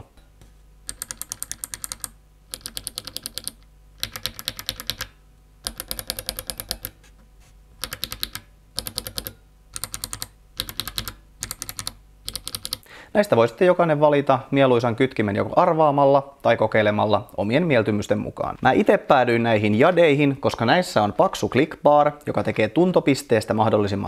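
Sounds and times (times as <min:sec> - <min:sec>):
clicky mechanical keyboard typing: 0:00.9 - 0:07.0, 0:07.8 - 0:12.8.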